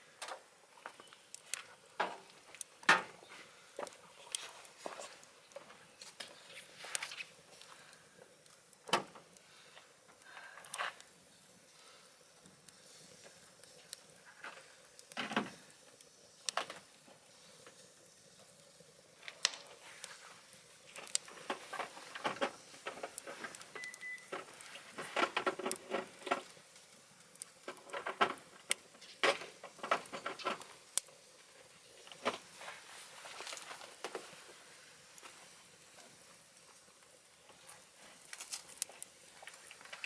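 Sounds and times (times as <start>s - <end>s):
low hiss of fire: 0.0s - 40.0s
wood fire crackling and popping: 0.0s - 40.0s.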